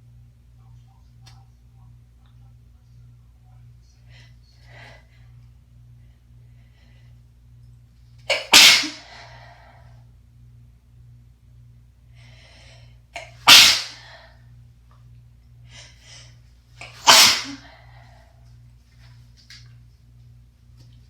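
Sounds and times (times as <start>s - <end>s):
faint breathing: 3.9s - 7.3s, 12.0s - 13.1s
person sneezing: 8.3s - 9.4s, 13.2s - 14.2s, 16.8s - 17.8s.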